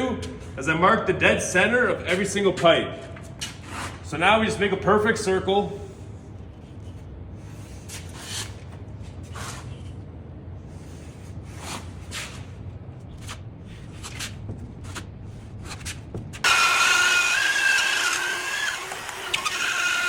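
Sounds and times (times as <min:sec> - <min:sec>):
power tool high whine: 0:16.4 - 0:20.0.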